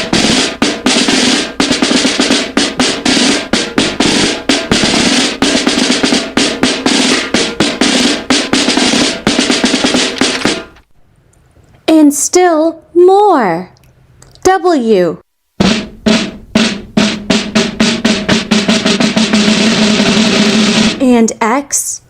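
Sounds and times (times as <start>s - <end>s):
rapid snare drumming: 0.0s - 10.8s, 15.6s - 21.2s.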